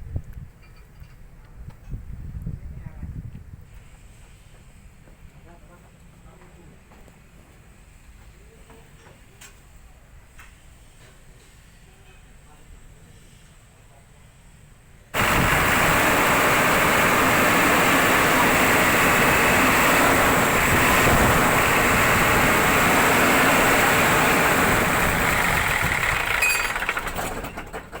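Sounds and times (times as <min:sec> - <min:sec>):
cooling fan air rush: 0:15.2 - 0:27.6
diesel truck engine running: 0:15.2 - 0:27.8.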